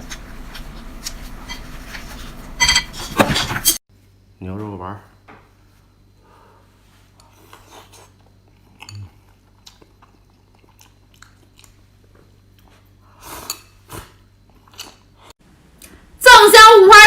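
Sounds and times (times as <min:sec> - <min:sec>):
person chewing: 0:07.2 - 0:15.2.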